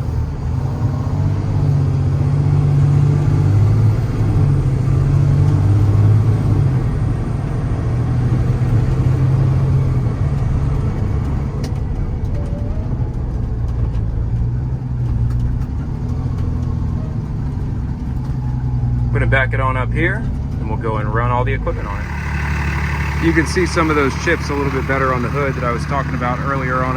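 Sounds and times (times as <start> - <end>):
truck diesel engine driving: 0.0 - 26.9.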